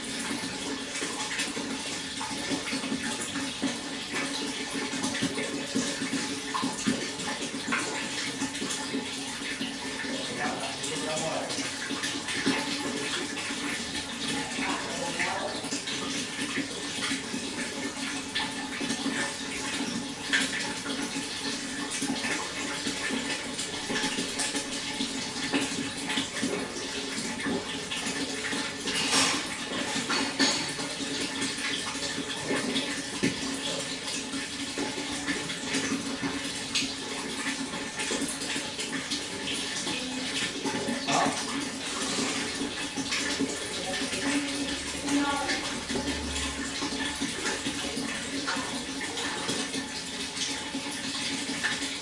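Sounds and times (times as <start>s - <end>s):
water flowing and splashing: 0.0s - 52.0s.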